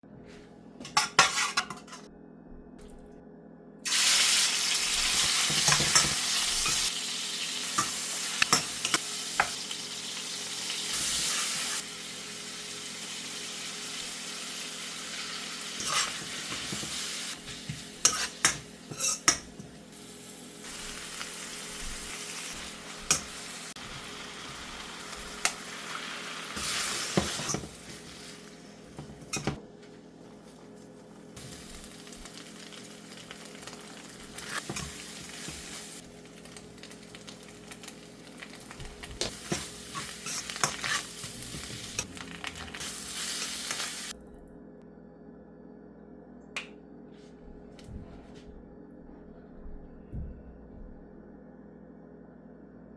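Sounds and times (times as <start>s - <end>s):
food sizzling in frying pan: 3.9s - 29.6s, 31.4s - 44.2s.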